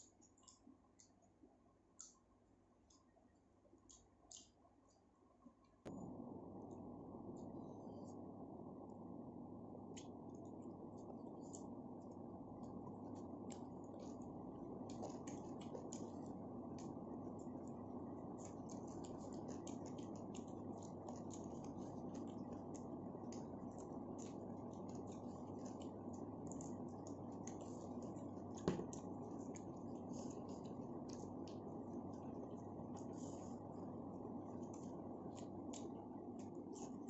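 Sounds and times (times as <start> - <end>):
steady low hum: 0.0 - 37.0
chewing clicks and smacks: 3.8 - 5.0, 12.6 - 33.1, 34.6 - 37.0.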